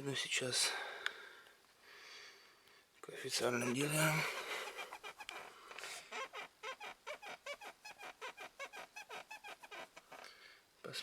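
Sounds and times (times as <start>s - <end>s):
car seat squeaking: 4.6s - 10.2s.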